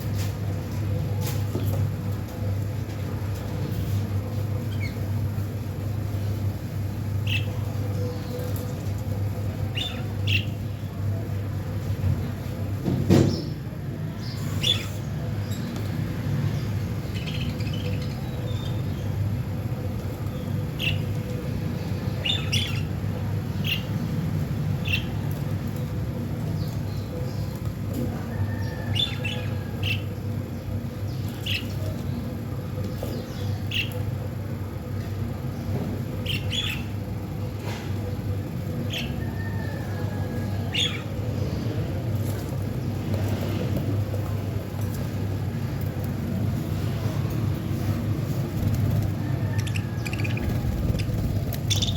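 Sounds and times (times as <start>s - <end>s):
steady low hum: 0.0s - 51.9s
budgerigars chirping: 49.5s - 51.9s.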